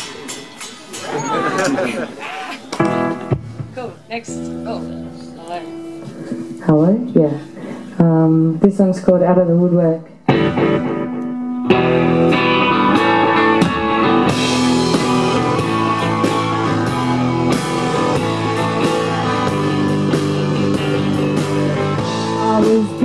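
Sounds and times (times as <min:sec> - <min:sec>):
drums and cymbals: 0:00.0 - 0:02.0, 0:12.6 - 0:23.0
guitar chords: 0:02.8 - 0:08.6, 0:09.2 - 0:23.0.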